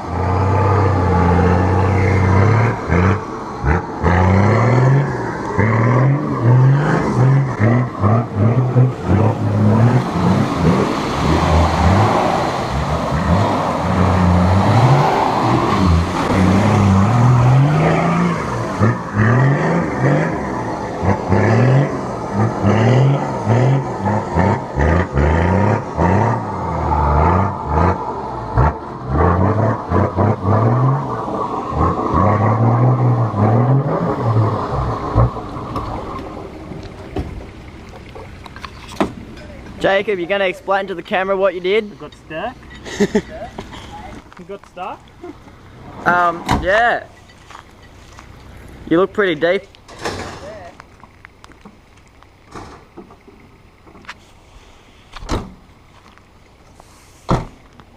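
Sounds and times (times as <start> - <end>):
vehicle engine revving: 0.0 - 51.6
knocks and bumps: 35.2 - 39.8.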